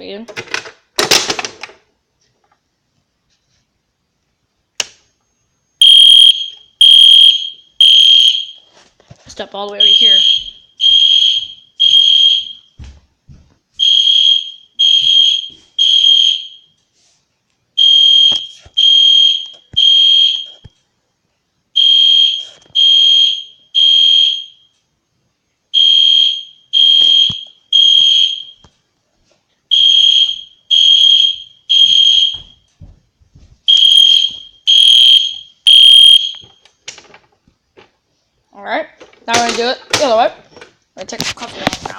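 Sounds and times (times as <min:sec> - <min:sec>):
fire alarm horn blasts: 0:05.8 - 0:08.6, 0:09.8 - 0:12.7, 0:13.8 - 0:16.7, 0:17.8 - 0:20.6, 0:21.8 - 0:24.7, 0:25.7 - 0:28.6, 0:29.7 - 0:32.6, 0:33.7 - 0:36.5.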